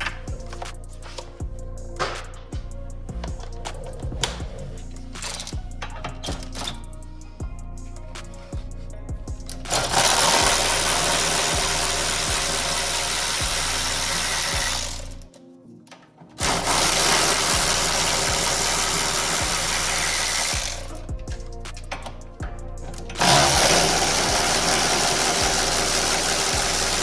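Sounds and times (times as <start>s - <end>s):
background music with steady beat: 0.0s - 27.0s
power tool running: 9.7s - 15.2s, 16.4s - 21.0s, 23.1s - 27.0s.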